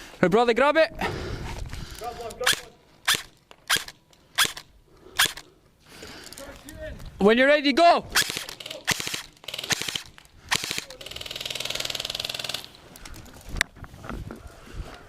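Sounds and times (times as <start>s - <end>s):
airsoft guns firing: 8.1s - 12.8s.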